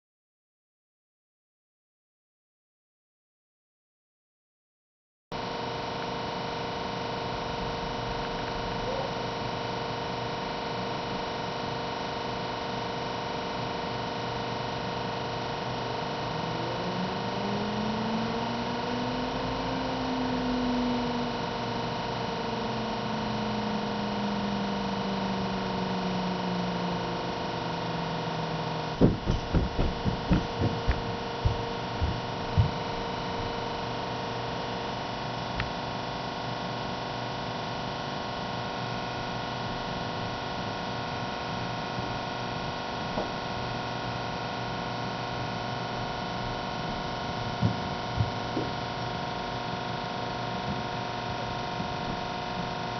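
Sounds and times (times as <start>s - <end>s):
tornado warning sirens: 15.5s - 34.0s
quick run of knocks: 29.0s - 33.2s.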